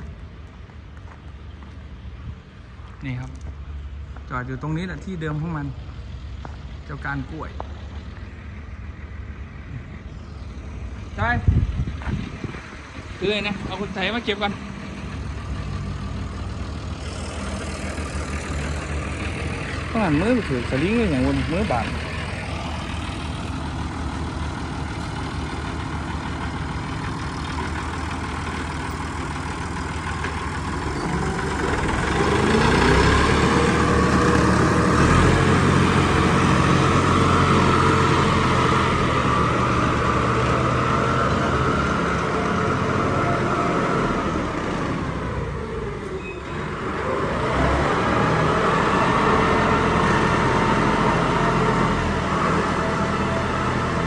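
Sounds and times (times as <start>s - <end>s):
heavy diesel engine revving: 11.0s - 54.0s.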